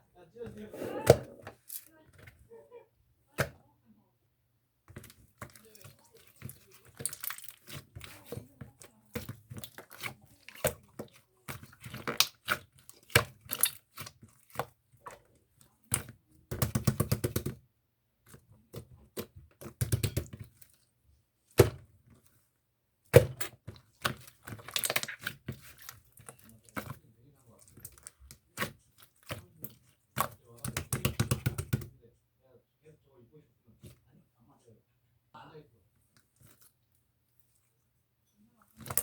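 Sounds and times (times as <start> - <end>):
slime squishing and popping: 11.5 - 14.6, 23.2 - 26.9.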